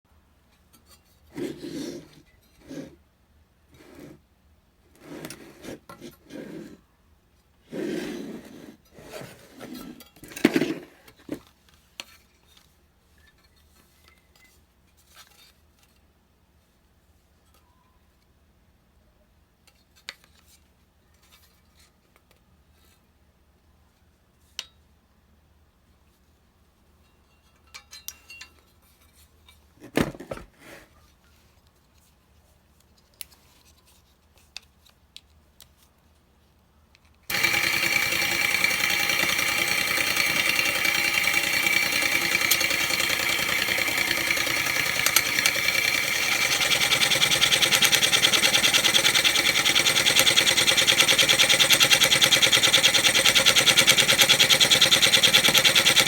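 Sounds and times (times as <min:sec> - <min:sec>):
scroll saw rattling: 0:07.7 - 0:11.5, 0:37.3 - 0:56.0.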